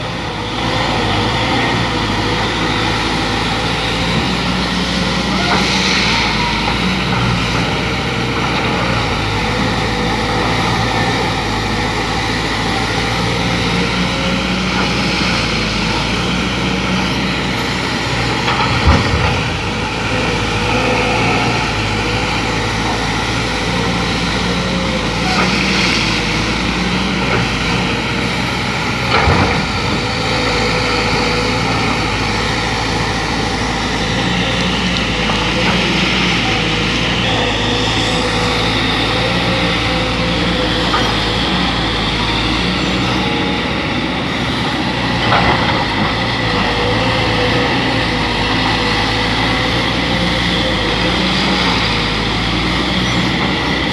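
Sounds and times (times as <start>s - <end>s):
excavator diesel engine: 0.0s - 53.9s.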